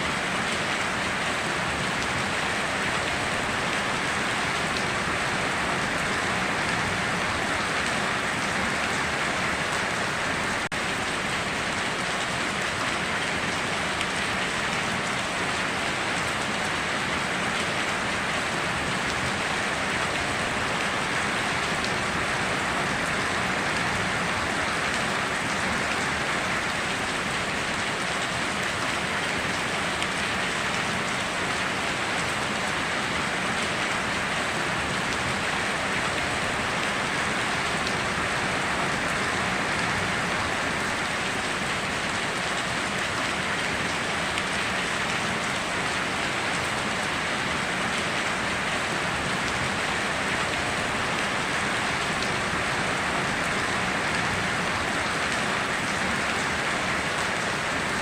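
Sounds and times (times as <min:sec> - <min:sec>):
heavy rain on foliage: 0:00.0 - 0:58.0.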